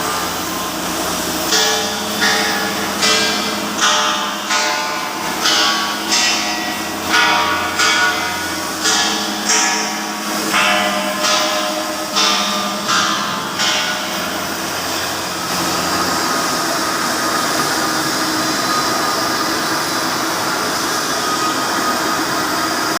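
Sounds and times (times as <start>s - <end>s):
welding arc hissing: 0.0s - 22.9s.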